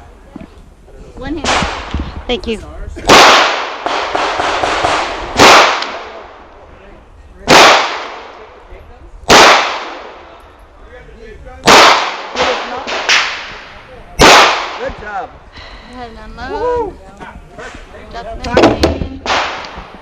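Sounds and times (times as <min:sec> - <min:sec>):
pistol shots with echo: 0:03.0 - 0:06.3, 0:07.4 - 0:08.4, 0:09.3 - 0:10.2, 0:11.6 - 0:15.0, 0:19.2 - 0:19.9.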